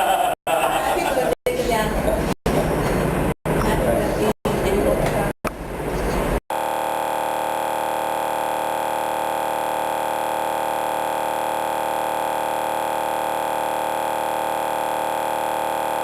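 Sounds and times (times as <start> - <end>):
steady buzzy tone: 6.5 - 16.0.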